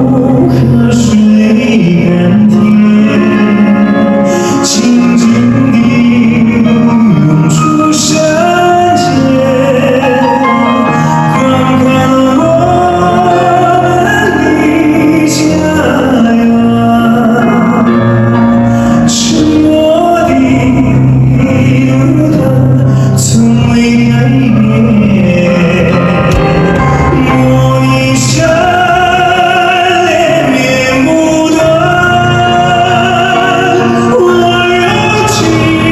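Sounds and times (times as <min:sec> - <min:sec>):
live band accompaniment: 0:00.0 - 0:35.9
man singing ballad: 0:00.0 - 0:35.9.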